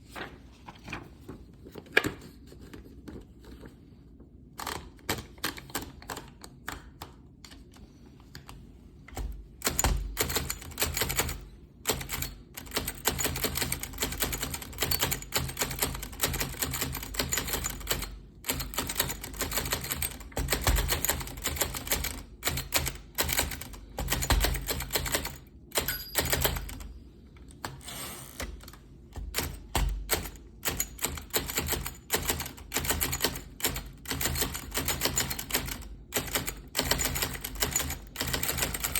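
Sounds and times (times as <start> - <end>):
typewriter keystrokes: 9.1 - 26.9, 28.4 - 38.9.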